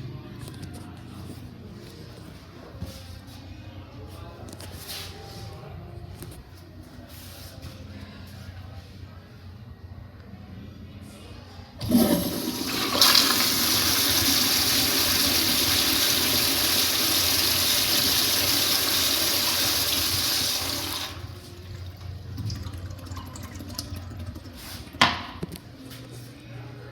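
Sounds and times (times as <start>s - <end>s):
toilet flushing: 11.8s - 25.4s.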